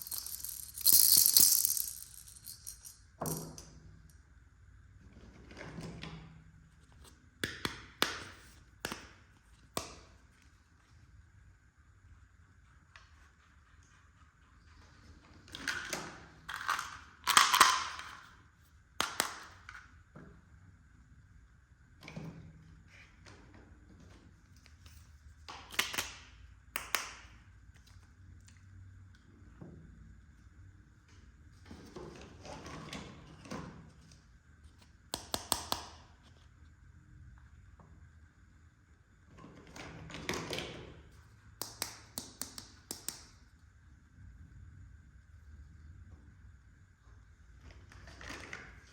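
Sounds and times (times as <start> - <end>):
plastic toy pieces rustling: 0.0 - 2.9.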